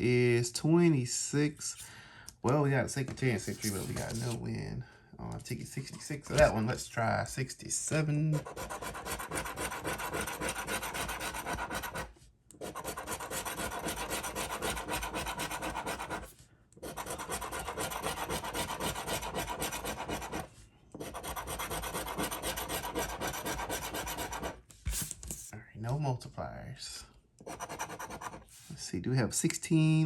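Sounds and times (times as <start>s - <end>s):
scratch card being scratched: 3.5s - 4.4s, 8.4s - 25.1s, 27.4s - 28.7s.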